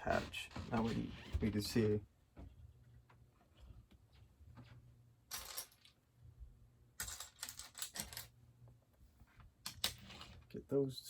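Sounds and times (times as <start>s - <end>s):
plastic pieces rattling and clicking: 7.0s - 8.3s.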